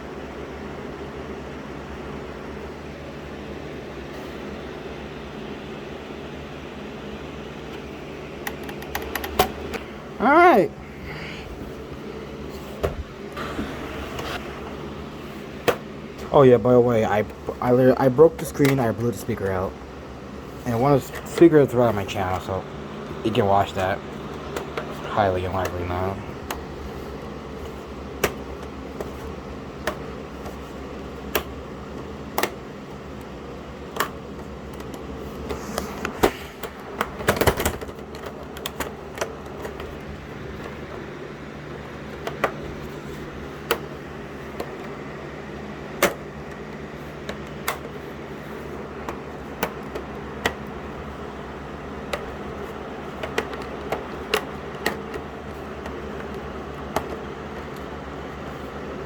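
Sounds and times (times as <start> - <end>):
steady low hum: 0.0 - 59.0.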